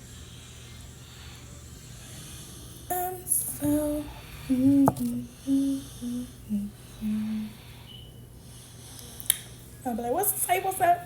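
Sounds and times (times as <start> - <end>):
woman humming: 2.9 - 7.6.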